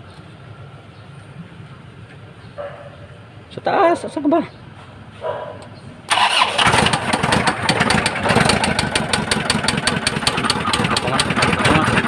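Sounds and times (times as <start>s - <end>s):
diesel engine knocking: 6.1s - 12.0s.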